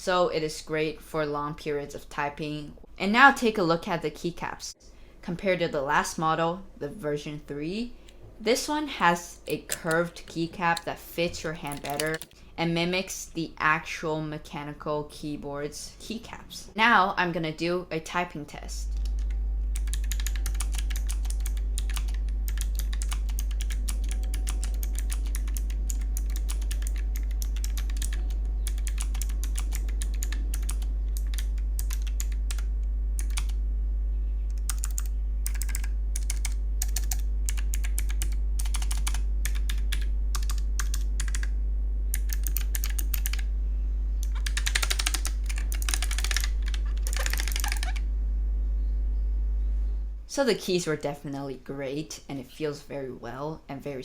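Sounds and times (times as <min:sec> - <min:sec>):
low hum: 0:18.3 - 0:50.4.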